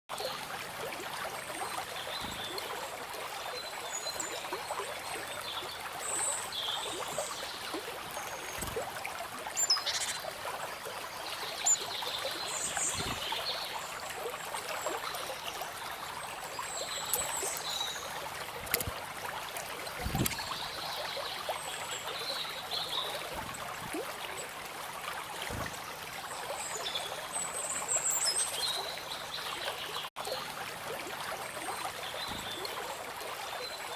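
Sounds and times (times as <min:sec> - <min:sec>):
stream water trickling: 0:00.1 - 0:33.9
birds chirping: 0:01.4 - 0:30.1
soft low thumps: 0:20.0 - 0:20.7, 0:23.3 - 0:24.3.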